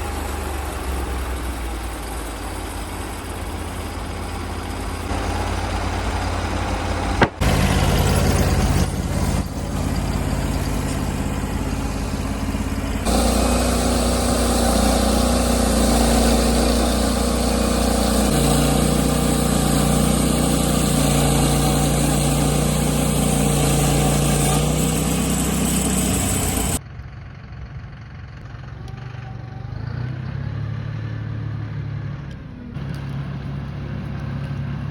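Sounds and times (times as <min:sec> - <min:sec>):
sawmill engine running: 0:00.0 - 0:29.2, 0:32.8 - 0:34.9
sharp click: 0:07.2 - 0:07.5.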